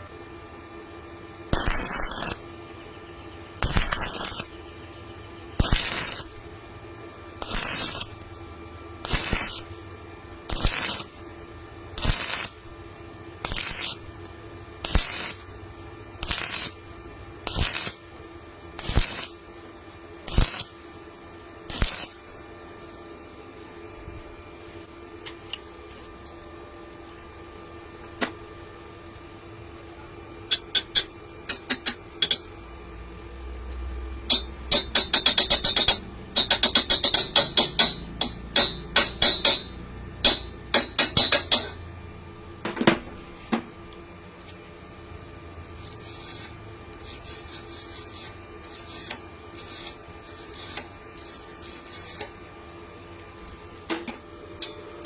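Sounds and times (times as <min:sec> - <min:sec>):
short hissing bursts with crack: 0:09.0 - 0:09.7, 0:14.8 - 0:15.4, 0:16.2 - 0:16.8, 0:17.5 - 0:18.0, 0:20.3 - 0:20.7, 0:45.8 - 0:52.3.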